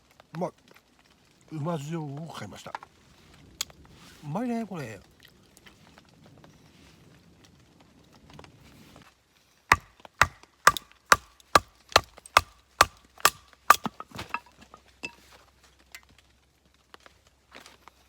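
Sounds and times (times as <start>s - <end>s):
chopping knocks on wood: 9.7s - 14.4s.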